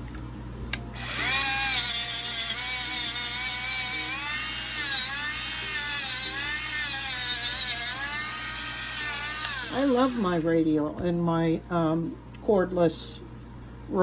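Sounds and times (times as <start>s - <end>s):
rotary tool whining: 0.8s - 10.5s.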